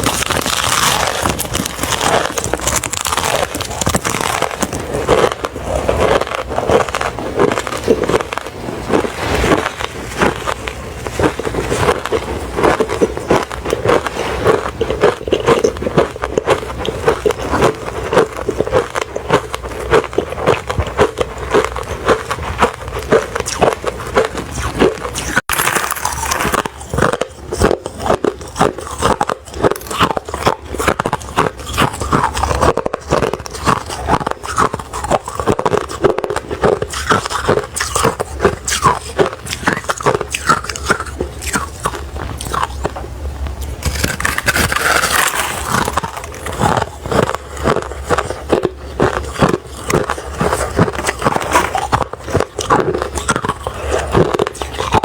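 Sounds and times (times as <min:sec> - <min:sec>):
crunching ice: 0:00.0 - 0:55.0
short scraping rush: 0:08.6 - 0:11.8.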